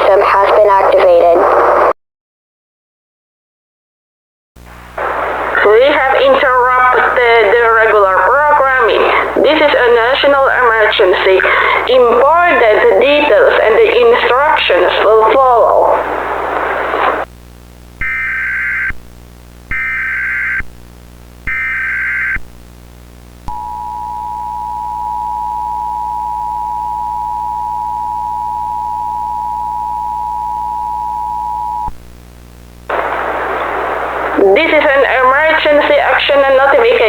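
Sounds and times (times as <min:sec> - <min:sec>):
hissy static: 0:00.0 - 0:01.9, 0:04.6 - 0:37.0
buzzy digital data bursts: 0:18.0 - 0:19.0, 0:19.6 - 0:20.7, 0:21.4 - 0:22.6
two-tone attention signal: 0:23.5 - 0:31.9.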